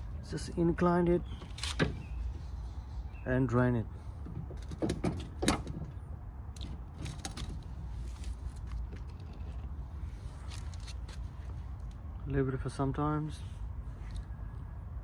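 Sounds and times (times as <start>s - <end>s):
knocks and creaks of lawn mower: 1.2s - 3.2s, 3.9s - 11.2s.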